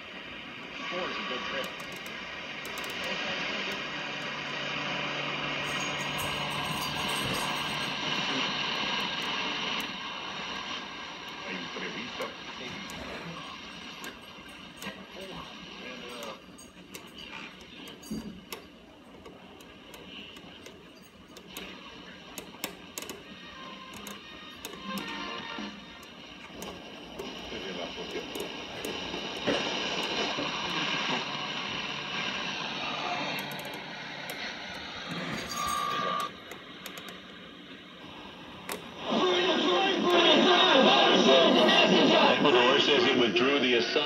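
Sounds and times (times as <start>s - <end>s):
radio static hiss: 0.0s - 44.0s
sharp clicks and crackles: 0.8s - 4.3s, 8.2s - 35.1s, 36.0s - 40.4s
radio whistling tones: 23.3s - 36.4s.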